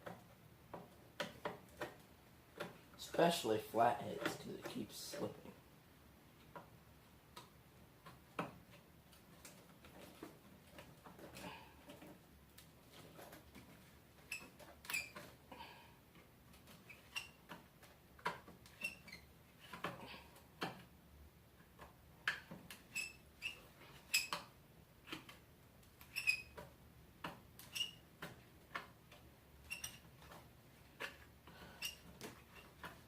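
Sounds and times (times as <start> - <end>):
metallic squeaks: 26.1 - 26.6, 29.7 - 30.0.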